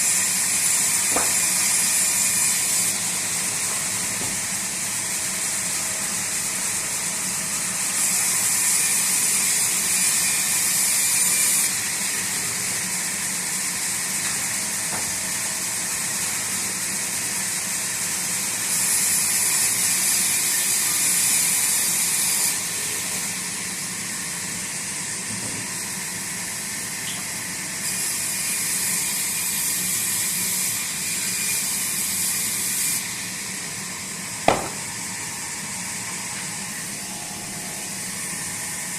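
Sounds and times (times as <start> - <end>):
sawmill machinery humming: 0.0 - 24.6
sharp knock: 1.2 - 1.4, 34.5 - 34.9.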